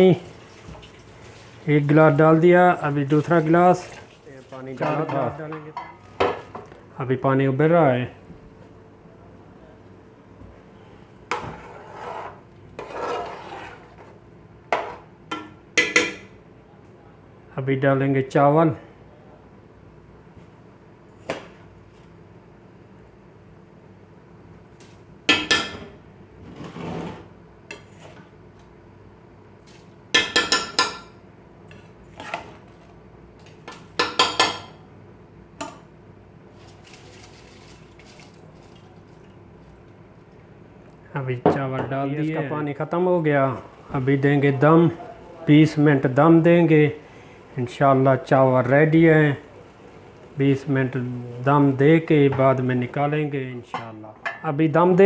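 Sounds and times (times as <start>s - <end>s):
water boiling: 0.0s - 4.8s, 36.6s - 40.6s
utensil scraping a pot: 11.3s - 14.2s, 26.5s - 28.2s.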